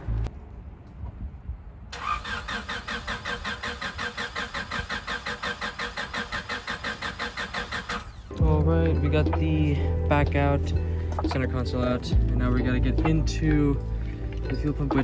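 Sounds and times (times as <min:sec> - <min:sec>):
starter cranking car engine: 0:02.0 - 0:09.1.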